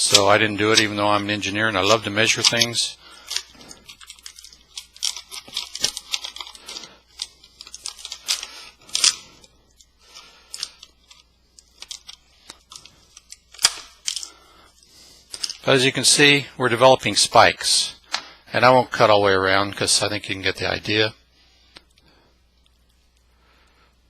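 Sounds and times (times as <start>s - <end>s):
plastic crackling: 0.0s - 14.4s, 15.3s - 15.8s.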